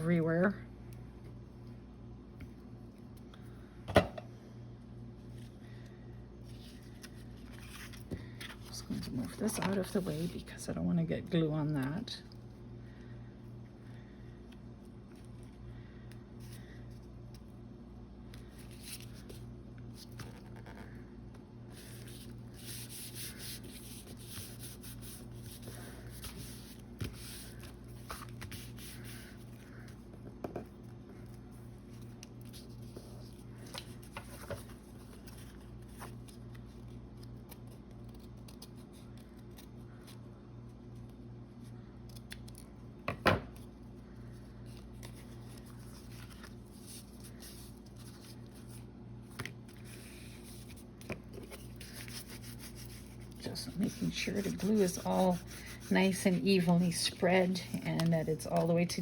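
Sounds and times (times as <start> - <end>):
steady low hum: 0.0 - 59.0
spreader rubbing on paper: 51.5 - 58.5.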